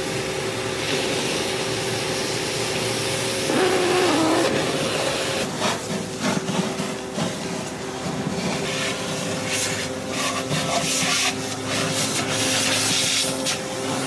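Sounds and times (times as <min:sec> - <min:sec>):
machine hum: 0:02.9 - 0:10.2
rushing suction noise: 0:03.4 - 0:07.3
debris scraping up a hose: 0:03.5 - 0:13.7.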